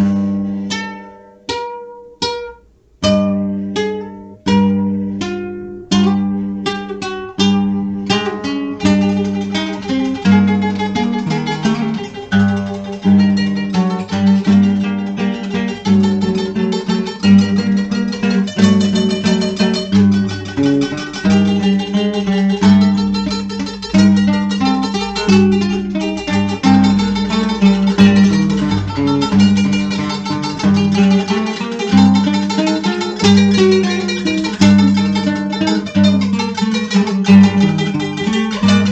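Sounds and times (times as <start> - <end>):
plucked acoustic guitar: 0.0 - 38.9
low drone: 19.9 - 32.4.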